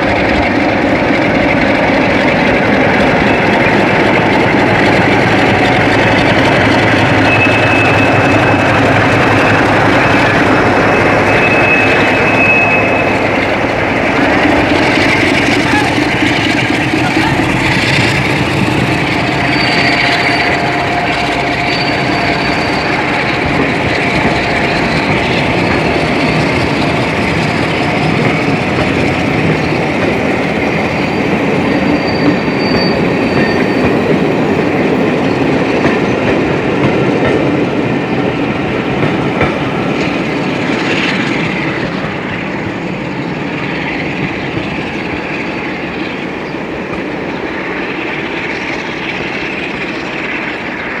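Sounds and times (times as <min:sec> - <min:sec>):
train wheels clattering over rail joints: 0:00.0 - 0:51.0
wheel squeal: 0:02.1 - 0:36.3.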